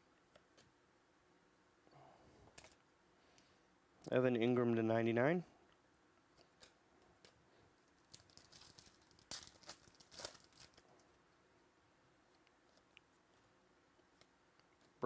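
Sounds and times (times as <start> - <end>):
trading cards and packaging rustling: 6.4 - 11.1.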